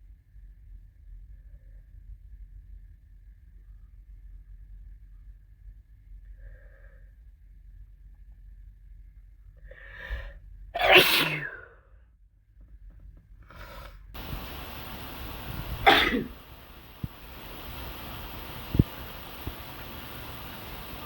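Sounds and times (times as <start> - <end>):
person sneezing: 10.8 - 11.7, 15.8 - 16.4
steady hiss: 14.2 - 21.0.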